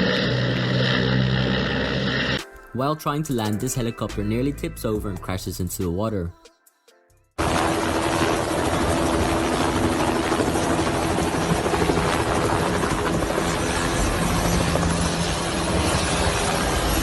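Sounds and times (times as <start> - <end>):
helicopter rotor and engine: 7.4 - 17.0.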